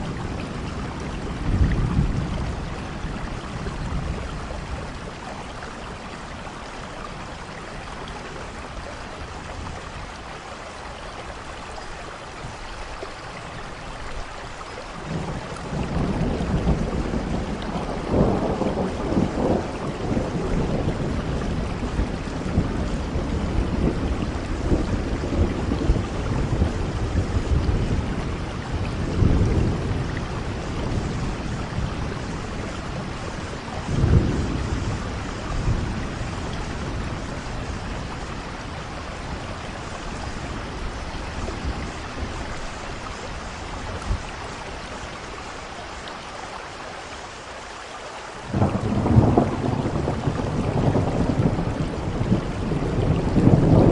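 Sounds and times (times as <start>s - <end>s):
rolling thunder: 0.0s - 6.6s, 15.1s - 44.6s, 48.5s - 53.9s
rain hissing: 0.0s - 53.9s.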